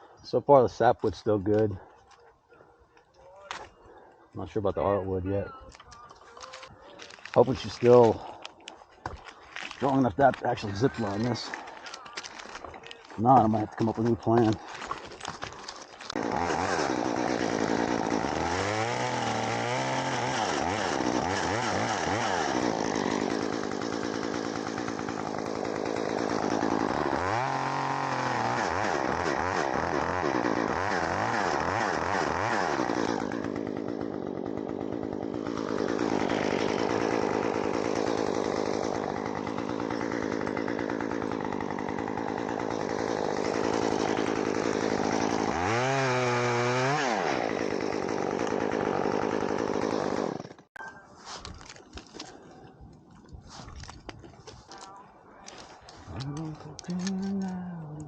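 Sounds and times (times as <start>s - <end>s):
chainsaw revving: 9.7s - 50.7s, 56.0s - 58.0s.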